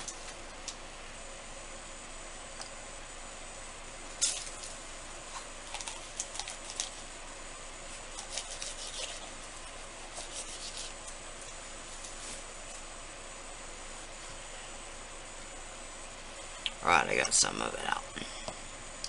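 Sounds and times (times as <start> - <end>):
scratchy rubbing: 8.1 - 11.0.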